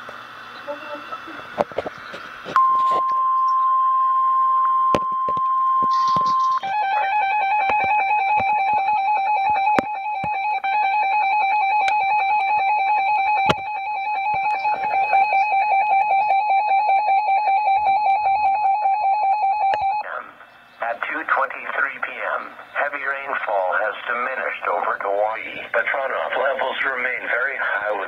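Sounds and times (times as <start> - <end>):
two-tone alert tone: 2.6 - 20.0.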